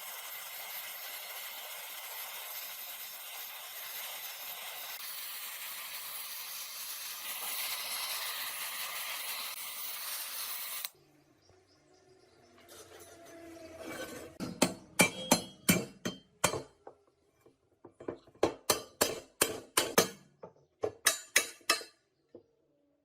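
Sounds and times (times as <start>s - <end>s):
steady hissing: 0.0s - 11.0s.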